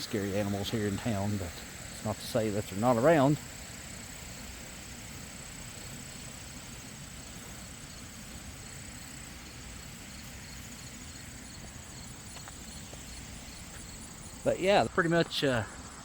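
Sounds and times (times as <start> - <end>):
small waterfall rushing: 0.0 - 11.9
cricket trill: 0.0 - 16.0
pulsed cricket chirping: 0.0 - 16.0.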